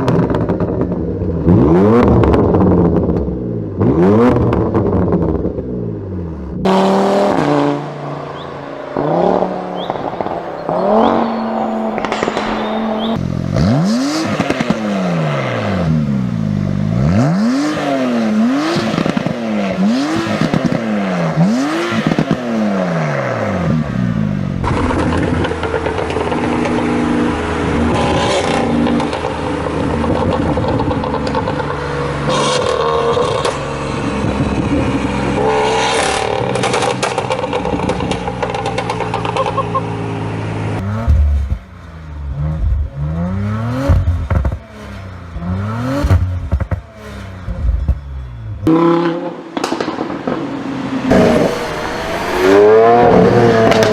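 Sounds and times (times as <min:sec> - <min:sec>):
exhaust crackles and pops: 0:00.0 - 0:03.3, 0:09.8 - 0:14.9, 0:24.6 - 0:27.1, 0:27.8 - 0:33.6, 0:36.0 - 0:39.9, 0:45.9 - 0:46.9, 0:49.5 - 0:51.9, 0:53.3 - 0:53.9
car engines revving: 0:00.0 - 0:53.9.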